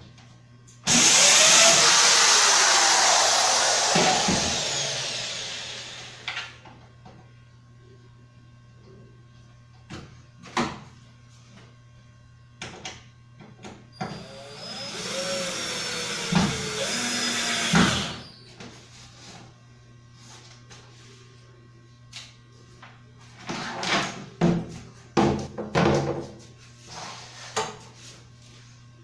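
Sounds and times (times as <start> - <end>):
small electric power tool whining: 0.9 - 6.6, 14.0 - 18.4.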